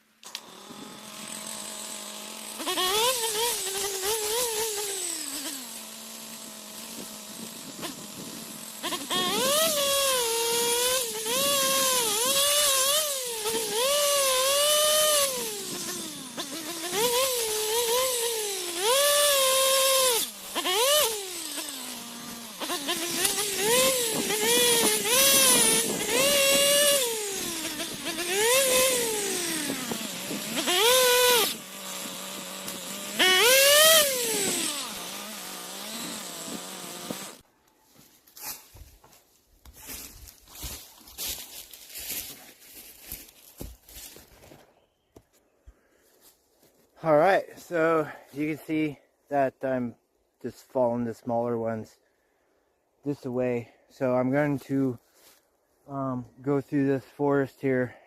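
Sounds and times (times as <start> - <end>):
small two-stroke engine revving: 0.0 - 37.4.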